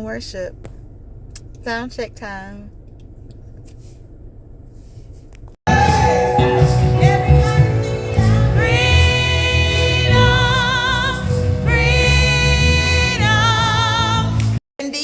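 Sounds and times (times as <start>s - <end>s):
singers holding vibrato notes: 5.7s - 14.5s
gospel band playing: 5.7s - 14.6s
heavy bass: 5.7s - 14.6s.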